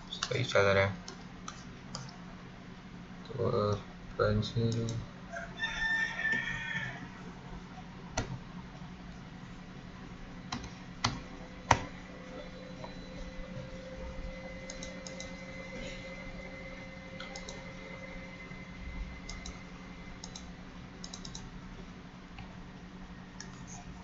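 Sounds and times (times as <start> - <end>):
steady low hum: 0.0 - 5.6, 6.8 - 24.0.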